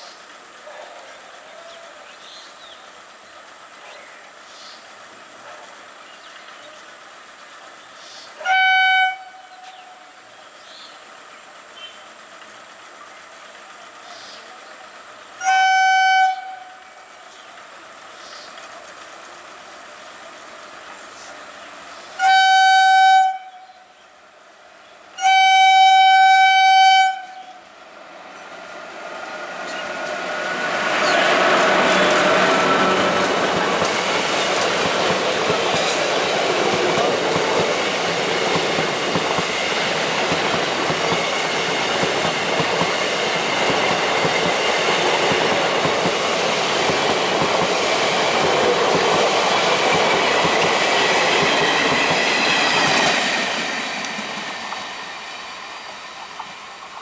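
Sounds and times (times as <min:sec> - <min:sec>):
rumble of approaching train: 0:00.0 - 0:57.0
train horn blasts: 0:08.4 - 0:10.1, 0:15.4 - 0:17.1, 0:22.2 - 0:24.0, 0:25.2 - 0:27.7.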